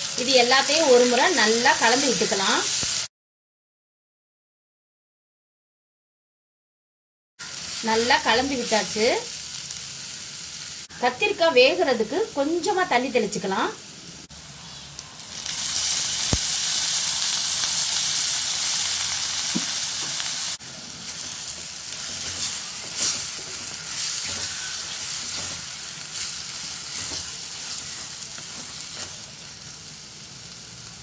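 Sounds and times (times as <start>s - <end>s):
food sizzling in hot pan: 0.0s - 3.1s, 7.4s - 31.0s.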